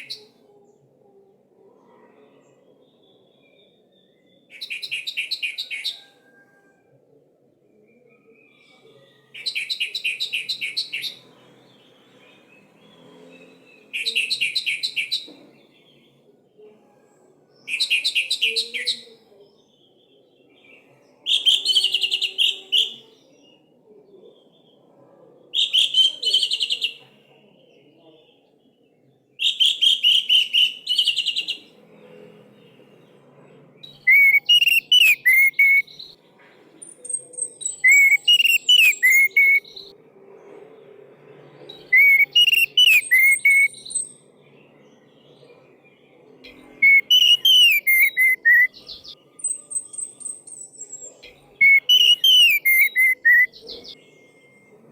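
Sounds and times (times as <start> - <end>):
thrush singing: 33.8 - 35.9, 37.6 - 39.9, 41.8 - 44.2, 46.7 - 48.7, 49.4 - 54.8.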